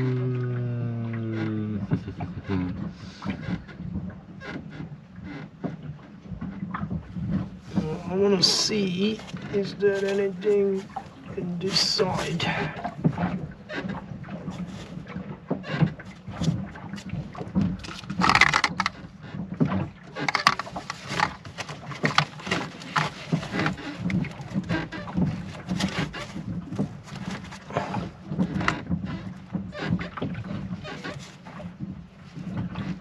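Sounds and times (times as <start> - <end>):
hands handling plastic device: 17.8 - 19.0, 20.2 - 23.8.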